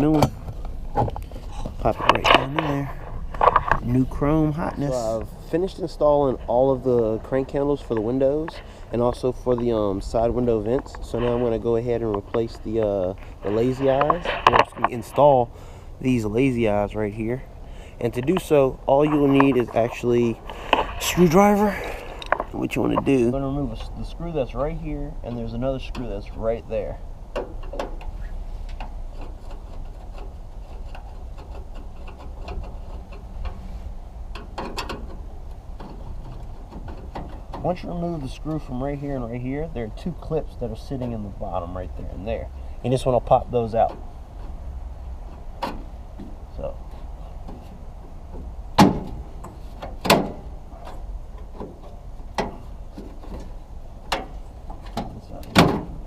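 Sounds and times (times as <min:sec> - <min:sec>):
low steady hum: 0:00.0 - 0:56.0
steady low rumble: 0:00.0 - 0:56.0
metal clicks and ticks: 0:22.0 - 0:23.1.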